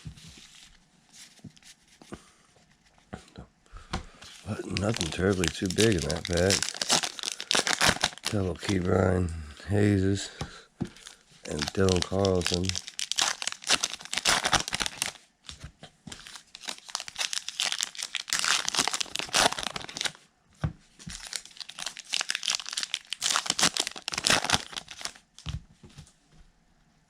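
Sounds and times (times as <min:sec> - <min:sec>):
plastic wrapping crinkling and tearing: 0:04.3 - 0:08.9, 0:11.0 - 0:15.2, 0:16.1 - 0:20.2, 0:21.1 - 0:25.5.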